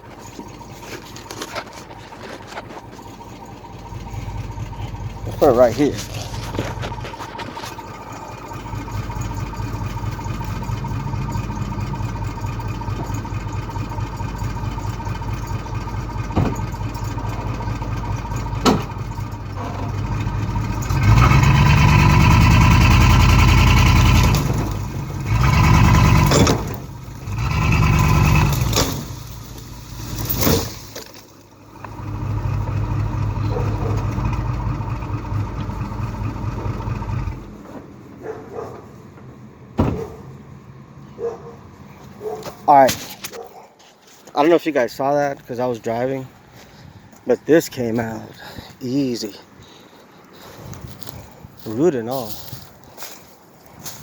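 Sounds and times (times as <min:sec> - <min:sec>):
truck engine revving: 0:00.0 - 0:38.6.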